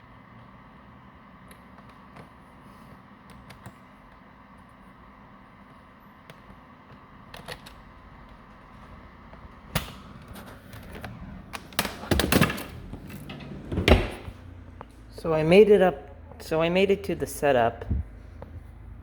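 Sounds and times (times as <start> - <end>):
background hum: 0.0 - 19.0.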